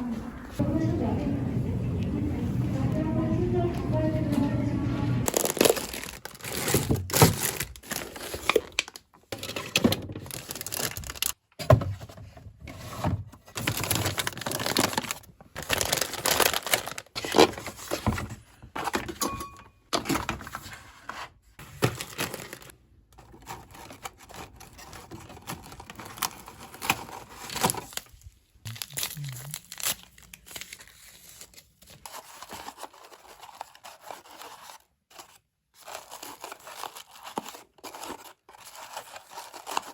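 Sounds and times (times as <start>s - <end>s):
packaging crinkling and tearing: 5.2s - 11.4s, 13.5s - 18.1s, 21.7s - 39.9s.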